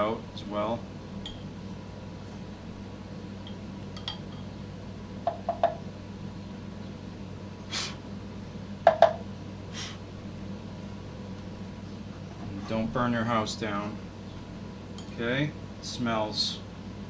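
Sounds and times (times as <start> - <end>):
short hissy air puffs: 7.6 - 8.0, 9.7 - 10.1.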